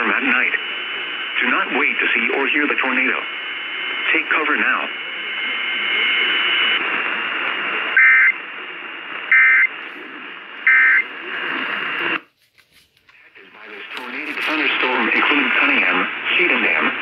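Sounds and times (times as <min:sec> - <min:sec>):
radio hiss: 0:00.0 - 0:12.3, 0:13.0 - 0:17.0
faint steady whine: 0:00.0 - 0:17.0.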